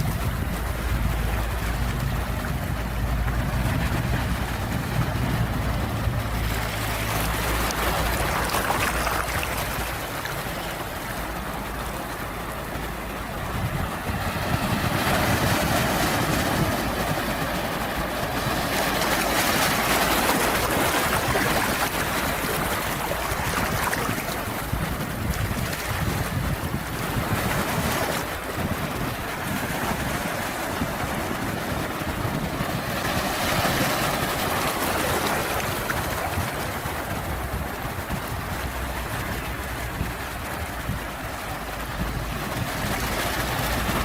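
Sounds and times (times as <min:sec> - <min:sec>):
low rumble: 0:00.0 - 0:19.9
ocean waves washing ashore: 0:00.0 - 0:44.0.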